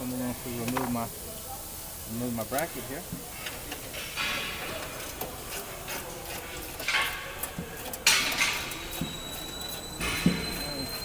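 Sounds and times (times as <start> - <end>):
hand tools clicking on metal: 3.4 - 11.0.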